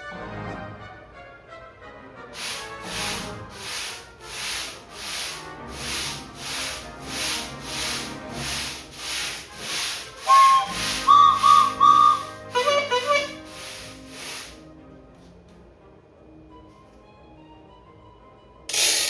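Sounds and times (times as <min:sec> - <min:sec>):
quiet orchestral music: 0:00.0 - 0:04.2, 0:10.3 - 0:18.7
steam engine chugging: 0:02.4 - 0:14.6
whistle toots: 0:10.2 - 0:14.0.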